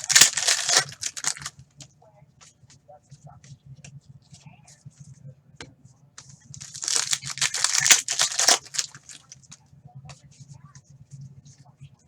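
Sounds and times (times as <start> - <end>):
card handling ticks: 0.0 - 1.5, 6.2 - 9.6
foil wrapper crinkling: 0.0 - 1.5, 6.6 - 9.4.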